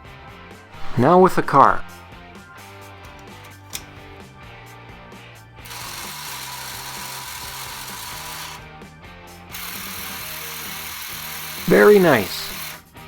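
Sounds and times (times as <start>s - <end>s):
plastic ratchet clicking and whirring: 5.6s - 8.6s, 9.5s - 13.0s.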